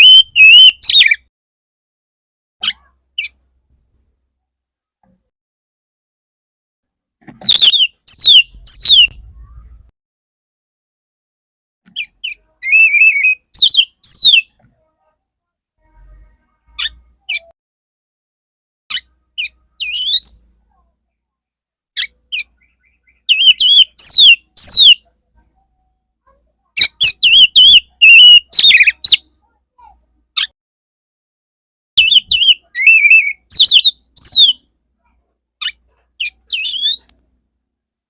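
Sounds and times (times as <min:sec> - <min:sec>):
magpie-robin singing: 0:00.0 - 0:01.2, 0:02.6 - 0:03.4, 0:07.4 - 0:09.2, 0:11.9 - 0:14.5, 0:18.9 - 0:20.7, 0:22.0 - 0:25.1, 0:26.7 - 0:29.5, 0:32.0 - 0:34.7, 0:35.6 - 0:37.4.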